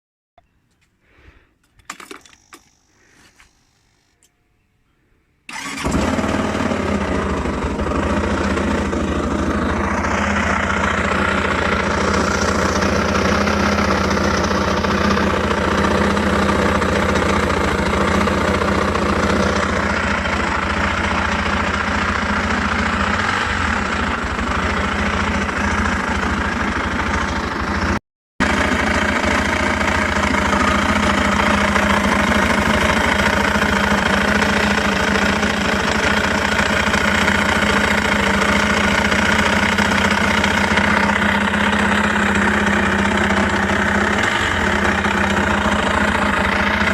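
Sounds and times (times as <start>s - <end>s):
scooter engine starting and idling: 1.6s - 4.3s, 5.5s - 46.9s
abnormal engine noise: 5.5s - 46.9s.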